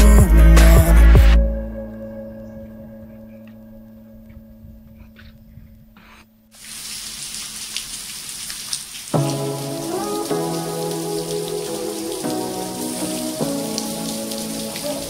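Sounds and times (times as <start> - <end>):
background music held notes: 0.0 - 5.8, 9.2 - 15.0
heavy rain patter: 6.6 - 15.0.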